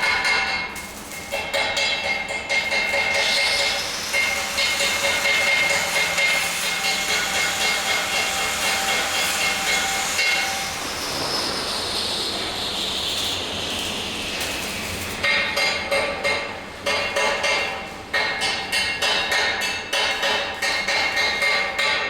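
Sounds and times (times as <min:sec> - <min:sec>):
welding hiss: 0:00.8 - 0:16.1.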